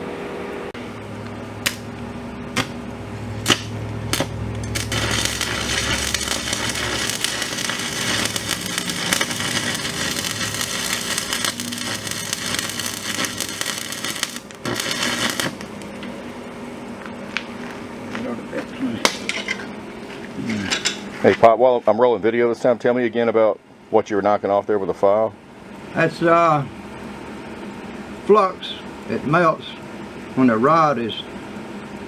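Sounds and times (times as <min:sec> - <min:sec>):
low welder hum: 0:00.0 - 0:32.0
welding arc crackling: 0:00.9 - 0:16.3.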